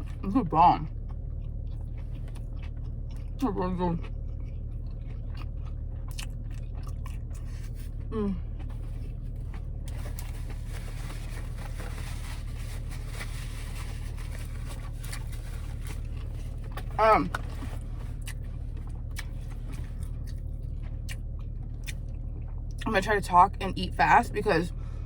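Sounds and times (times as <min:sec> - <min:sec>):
steady low hum: 0:00.0 - 0:25.0
person chewing food: 0:00.9 - 0:22.8
person humming: 0:08.1 - 0:08.4.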